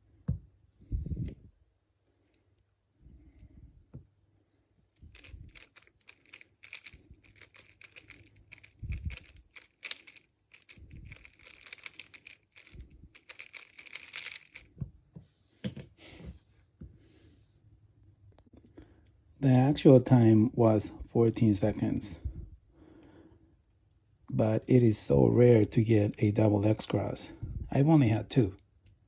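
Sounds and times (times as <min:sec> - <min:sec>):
puzzle cube plastic clicking: 0:05.0 - 0:14.7.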